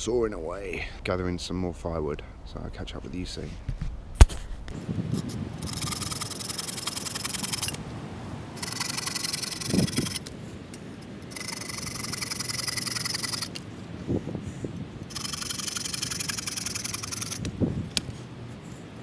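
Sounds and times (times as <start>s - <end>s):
bow saw rasping through branch: 5.0s - 7.8s, 8.6s - 13.7s, 14.6s - 18.8s.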